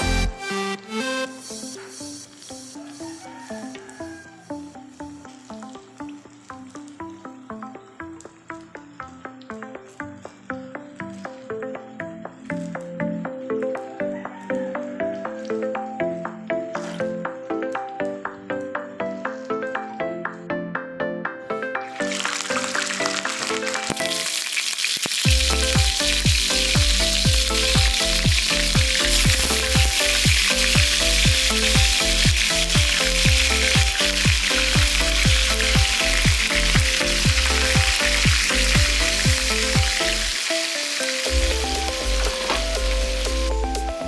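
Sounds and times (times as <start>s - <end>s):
food sizzling in hot oil: 22.0s - 43.5s
background music with drum beat: 25.1s - 44.0s.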